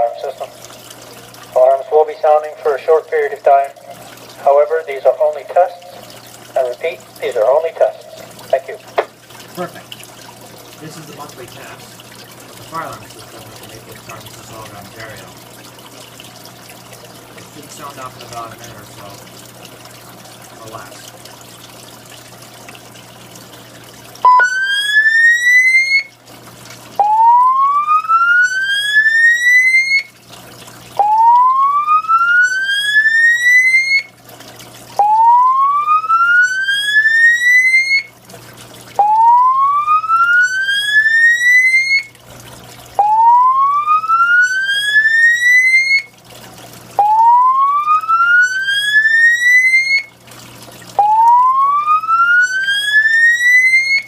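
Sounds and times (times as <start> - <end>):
whooping evacuation alarm tone: 0.0 - 0.7, 1.5 - 8.8, 24.2 - 26.2, 27.0 - 30.2, 30.9 - 34.2, 35.0 - 38.2, 39.0 - 42.2, 43.0 - 46.2, 46.9 - 50.2, 50.9 - 54.0.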